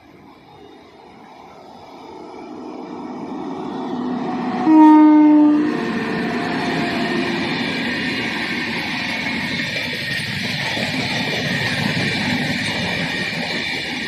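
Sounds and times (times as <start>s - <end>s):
train running rumble: 0.0s - 14.0s
locomotive horn blast: 4.3s - 5.8s.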